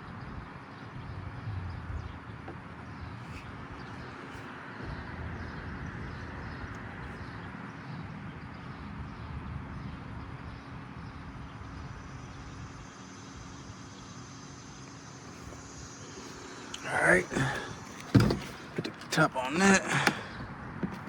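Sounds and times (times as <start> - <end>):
low rumble: 1.0 - 2.4.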